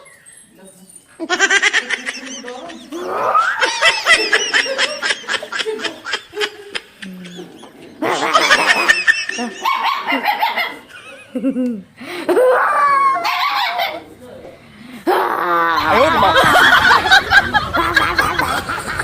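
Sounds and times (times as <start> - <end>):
dog barking: 9.6 - 10.8.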